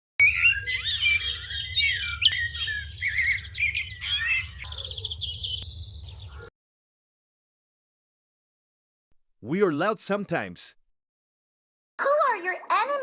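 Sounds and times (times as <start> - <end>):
fast buzzy bird trill: 0.2 - 6.5
songbirds chirping and warbling: 0.2 - 6.5.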